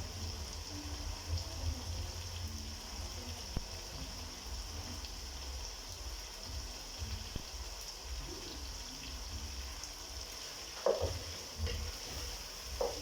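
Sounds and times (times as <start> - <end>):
food sizzling in a pot: 0.0 - 13.0
knock: 10.8 - 11.9, 12.8 - 13.0.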